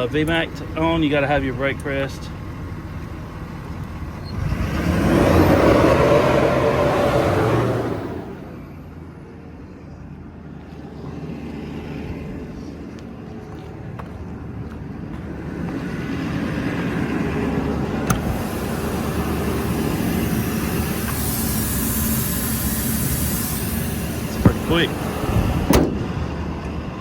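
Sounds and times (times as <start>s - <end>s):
diesel engine running: 0.0s - 27.0s
air compressor building pressure: 16.8s - 26.2s.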